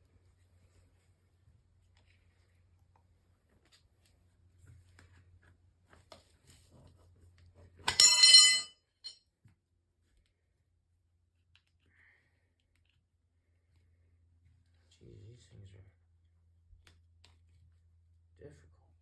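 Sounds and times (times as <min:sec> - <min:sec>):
metal clang ringing: 0:07.9 - 0:08.7.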